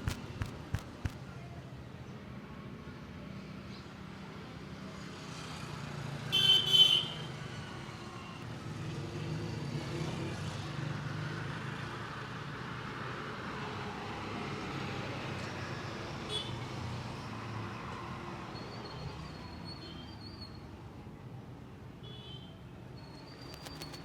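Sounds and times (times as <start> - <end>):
vehicle horn double honk: 6.3 - 7.2.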